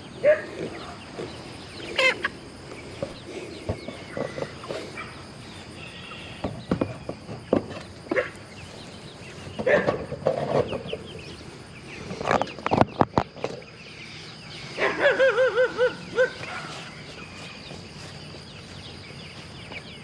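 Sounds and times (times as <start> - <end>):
farm animal call quavering: 0.0 - 6.5, 13.5 - 18.1.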